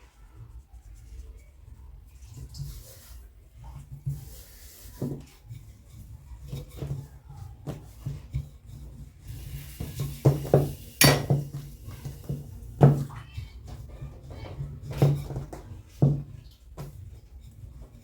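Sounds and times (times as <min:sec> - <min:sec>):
rolling pin rubbing dough: 0:00.0 - 0:18.0.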